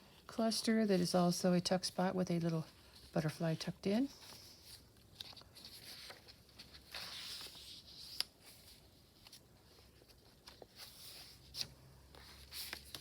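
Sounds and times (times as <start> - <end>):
paper pages rustling: 2.8 - 13.0.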